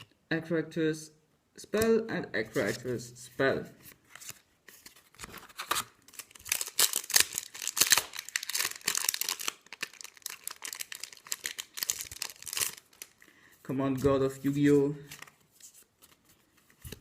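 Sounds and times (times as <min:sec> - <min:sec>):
foil wrapper tearing and crinkling: 0:05.4 - 0:13.2.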